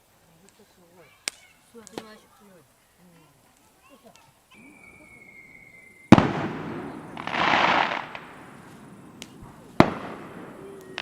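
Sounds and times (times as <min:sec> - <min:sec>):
firework hissing spray: 0:04.2 - 0:11.0
firework bangs with crackling: 0:04.6 - 0:11.0.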